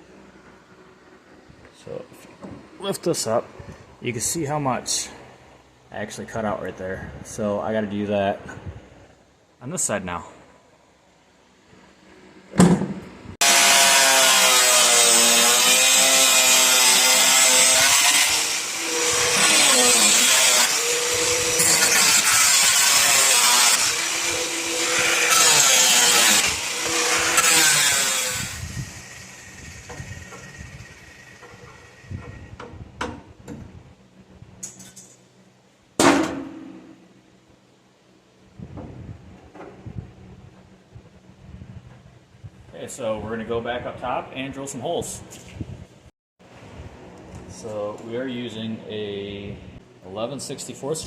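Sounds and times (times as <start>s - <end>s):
power cutting tool cutting: 13.4s - 32.4s
loud metallic clang: 36.0s - 37.0s.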